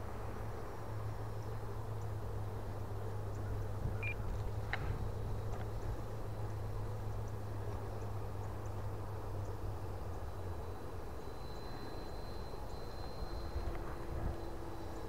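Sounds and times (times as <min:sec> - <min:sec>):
electric jet fan whine: 0:00.0 - 0:15.0.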